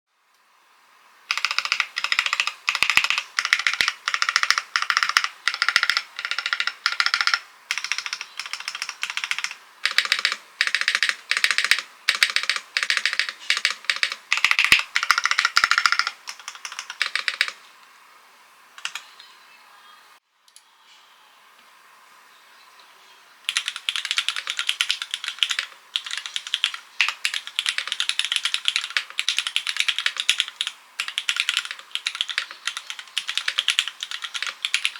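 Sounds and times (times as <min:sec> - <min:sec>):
typing on mechanical keyboard: 0:01.3 - 0:17.6, 0:18.8 - 0:19.0, 0:23.5 - 0:34.9.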